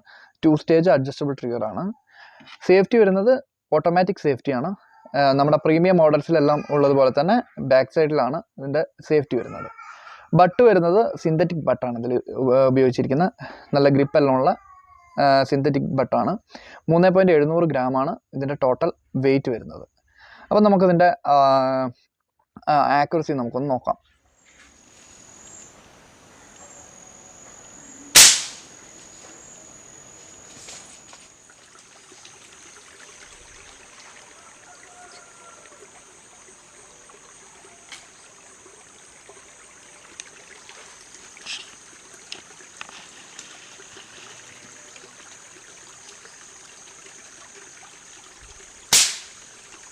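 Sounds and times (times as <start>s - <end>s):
insects shrilling: 24.4s - 34.0s, 34.9s - 47.8s, 48.6s - 49.9s
air rifle shot: 28.1s - 28.8s, 48.9s - 49.4s.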